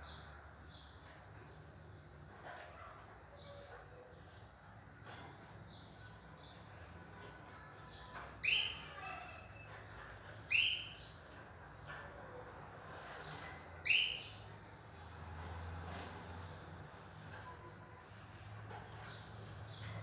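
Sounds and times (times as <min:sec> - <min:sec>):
finches chirping: 0:08.0 - 0:11.3, 0:12.4 - 0:14.5.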